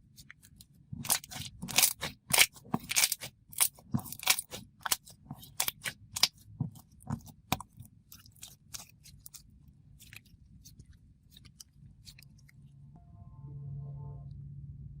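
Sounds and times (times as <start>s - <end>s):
slime squished by hand: 0.1s - 12.6s.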